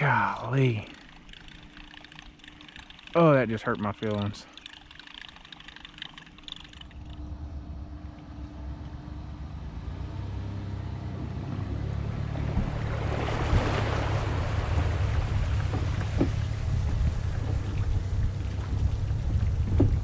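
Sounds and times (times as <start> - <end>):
boat motor humming: 0.0 - 20.0
wind and rain rushing: 12.4 - 20.0.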